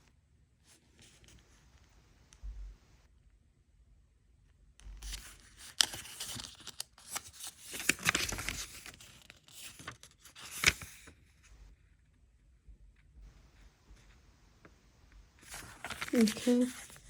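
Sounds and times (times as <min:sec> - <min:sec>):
paper pages rustling: 0:05.0 - 0:11.5, 0:15.4 - 0:17.0.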